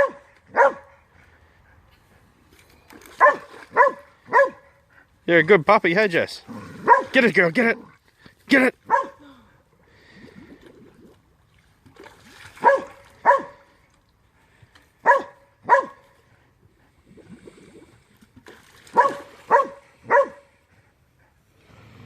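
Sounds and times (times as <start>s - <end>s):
dog barking: 0.0s - 0.9s, 3.2s - 4.7s, 6.8s - 7.2s, 8.9s - 9.2s, 12.6s - 13.6s, 15.0s - 16.0s, 19.0s - 20.4s.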